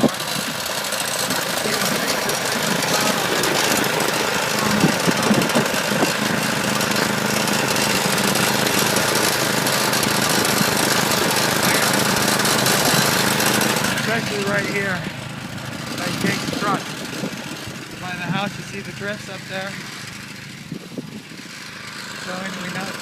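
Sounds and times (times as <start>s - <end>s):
small engine running: 0.0s - 23.0s
wind on microphone: 1.3s - 6.7s, 16.0s - 18.4s, 20.6s - 21.5s.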